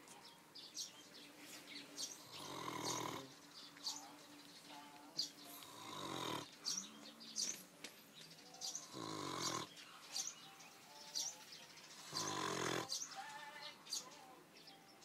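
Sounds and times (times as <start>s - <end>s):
dog snoring: 2.3s - 3.3s, 5.6s - 6.5s, 8.8s - 9.7s, 12.0s - 12.9s.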